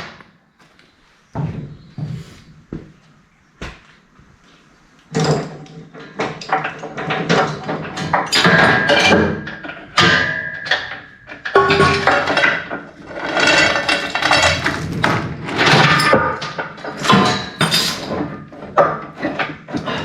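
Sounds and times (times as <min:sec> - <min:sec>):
steel chains clanking and rattling: 0:05.1 - 0:20.0.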